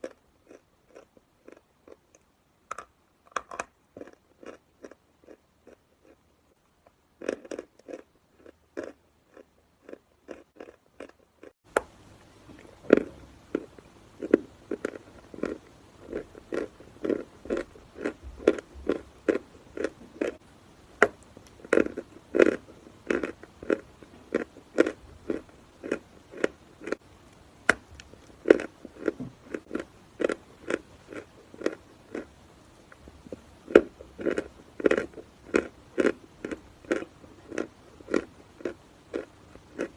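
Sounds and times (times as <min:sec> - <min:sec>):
chalk being chewed: 0:00.0 - 0:02.2, 0:07.2 - 0:11.6, 0:33.3 - 0:39.9
faint low background hiss: 0:00.0 - 0:39.9.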